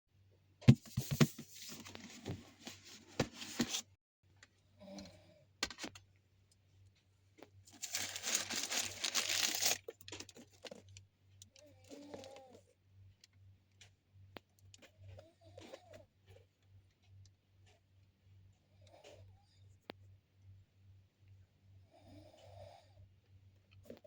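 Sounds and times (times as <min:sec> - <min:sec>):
packaging tearing and crinkling: 0:07.8 - 0:10.8.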